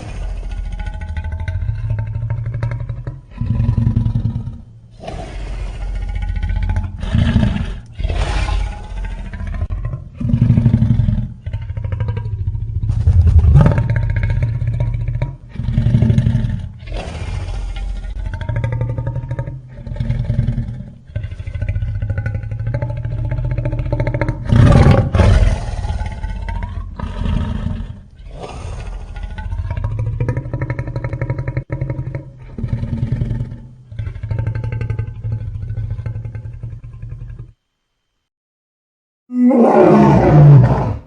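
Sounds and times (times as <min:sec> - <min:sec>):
deep monster roars: 0:05.0 - 0:19.0, 0:21.1 - 0:33.3, 0:39.3 - 0:41.0.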